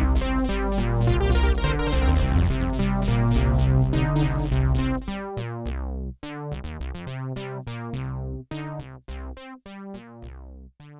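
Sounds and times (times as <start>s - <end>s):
synthesizer plucky notes with delay: 0.0s - 5.4s
held synth bass notes: 0.0s - 6.9s.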